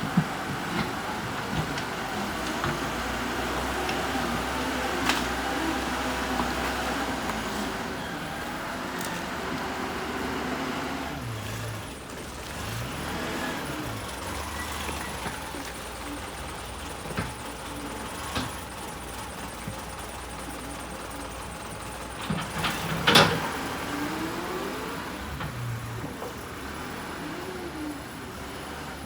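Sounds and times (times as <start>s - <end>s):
diesel engine running: 0.0s - 29.0s.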